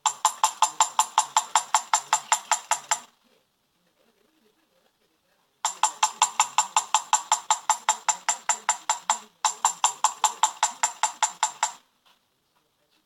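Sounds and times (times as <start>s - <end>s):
fast sharp tapping clicks: 0.0s - 3.1s, 5.6s - 11.8s.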